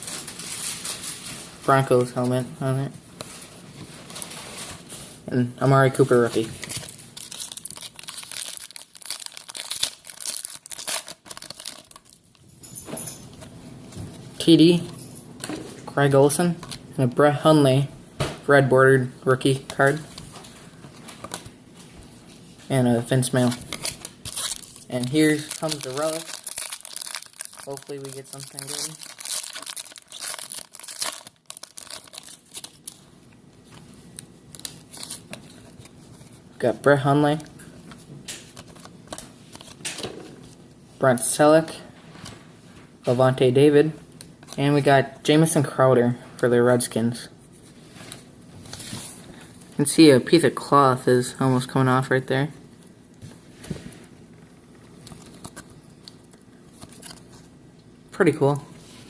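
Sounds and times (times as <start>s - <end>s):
foil wrapper crinkling and tearing: 6.4s - 12.4s, 23.4s - 33.1s, 34.5s - 35.9s.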